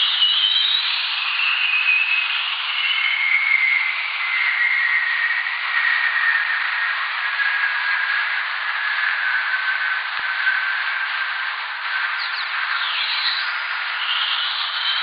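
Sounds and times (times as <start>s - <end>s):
faint falling whistle tone: 0.0s - 15.0s
steady radio hiss: 5.0s - 15.0s.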